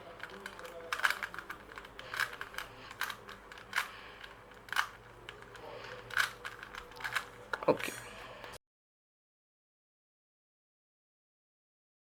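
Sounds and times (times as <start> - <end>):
plastic cube clacks when twisted: 0.0 - 8.1.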